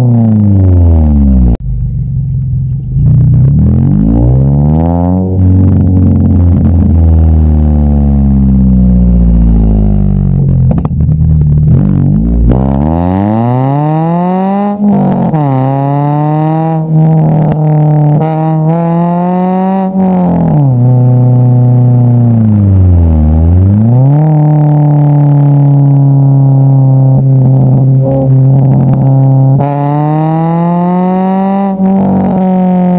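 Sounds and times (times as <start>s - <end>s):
car engine revving: 0.0s - 32.9s.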